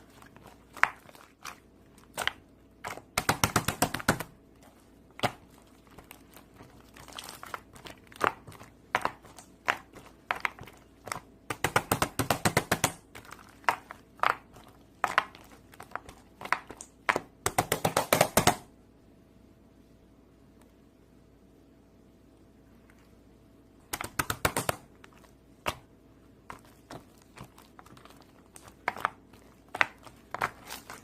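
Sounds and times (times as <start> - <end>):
crunchy slime crackling pops: 0.0 - 18.6, 26.5 - 31.0.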